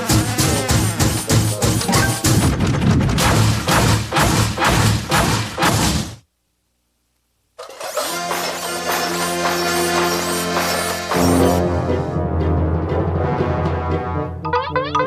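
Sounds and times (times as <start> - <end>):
cartoon music with hard beat: 0.0 - 6.2, 8.0 - 15.0
music with sustained notes: 11.1 - 15.0.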